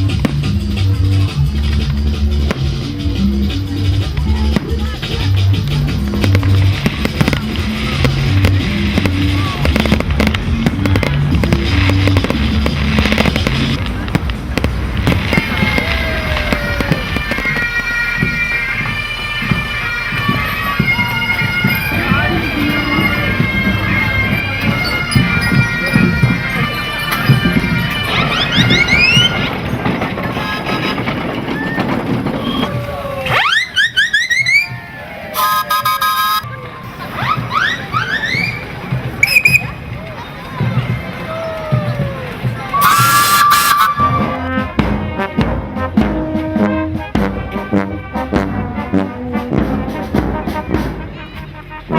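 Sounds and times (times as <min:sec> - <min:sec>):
music with low notes: 0:00.0 - 0:30.0, 0:43.9 - 0:51.9
firework bangs and crackles: 0:00.0 - 0:51.9
bagpipes playing: 0:15.0 - 0:30.5, 0:35.3 - 0:39.9, 0:42.6 - 0:44.8.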